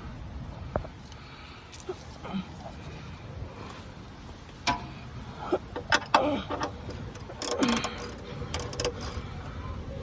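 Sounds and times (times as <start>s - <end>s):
ratchet clicking and clanking: 5.7s - 9.3s.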